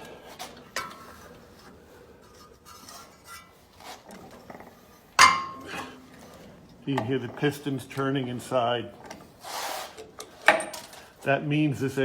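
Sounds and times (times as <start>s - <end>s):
sharp metal clank: 5.2s - 5.7s.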